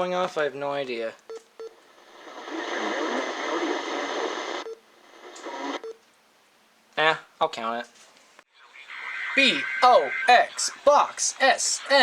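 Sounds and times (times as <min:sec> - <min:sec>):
radio static hiss: 0:01.8 - 0:05.8, 0:08.5 - 0:12.0.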